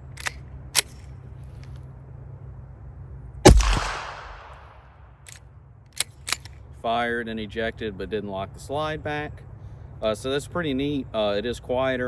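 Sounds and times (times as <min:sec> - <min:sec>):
suppressed pistol shot: 0:03.5 - 0:04.8.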